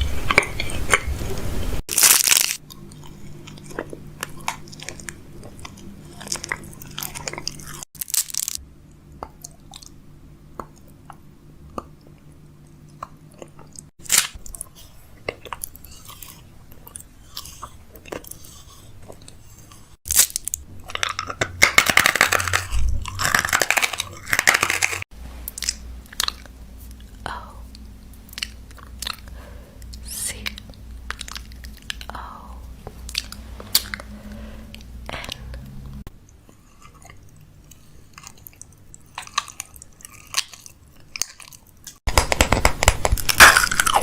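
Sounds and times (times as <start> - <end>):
close crunching: 1.9 - 2.6, 6.9 - 8.6.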